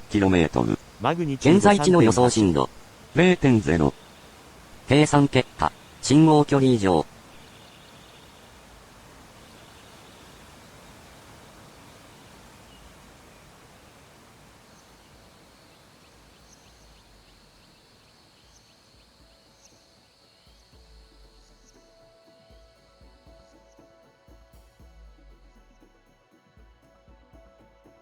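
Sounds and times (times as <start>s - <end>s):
faint background hiss: 0.0s - 28.0s.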